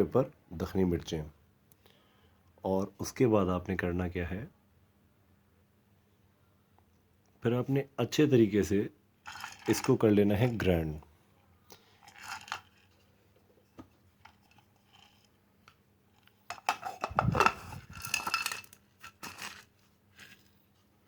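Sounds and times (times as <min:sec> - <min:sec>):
kitchen utensil scraping and clinking: 0:09.3 - 0:10.6, 0:16.5 - 0:19.7
peppercorns being ground by hand: 0:09.3 - 0:10.7, 0:12.0 - 0:13.0, 0:16.5 - 0:20.6.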